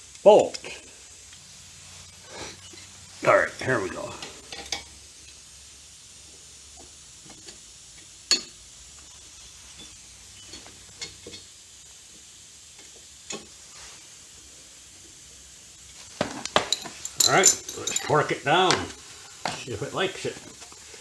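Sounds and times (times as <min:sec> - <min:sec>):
faint steady hiss: 0:00.0 - 0:21.0
hand tools tapping on metal: 0:04.2 - 0:04.9, 0:16.1 - 0:20.8.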